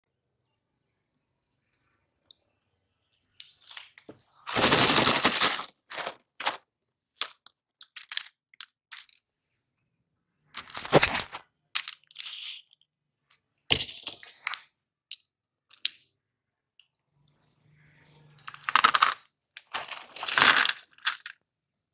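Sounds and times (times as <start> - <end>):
candy crunching in meat grinder: 4.5 - 6.6, 18.6 - 21.3.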